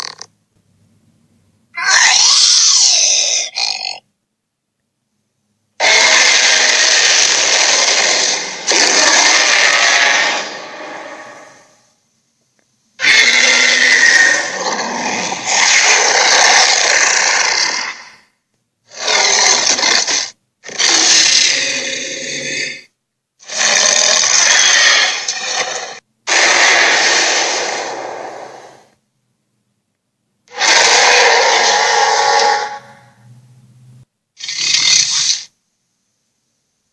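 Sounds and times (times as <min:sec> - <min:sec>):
giant creature roars and growls: 0:05.8 - 0:11.7, 0:13.0 - 0:18.2, 0:18.9 - 0:22.8, 0:23.4 - 0:28.9, 0:30.5 - 0:33.2.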